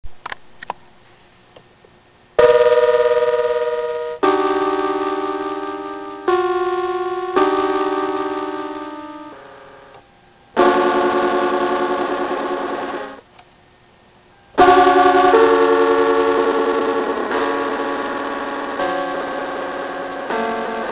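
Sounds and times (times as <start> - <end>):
warbling electronic keyboard chords: 2.4 - 10.0, 10.6 - 13.3, 14.6 - 20.9.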